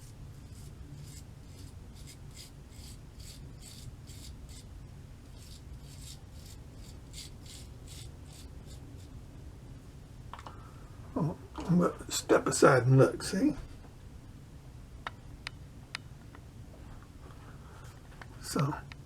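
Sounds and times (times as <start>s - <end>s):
razor scraping whiskers: 0.4s - 4.7s, 5.3s - 9.1s.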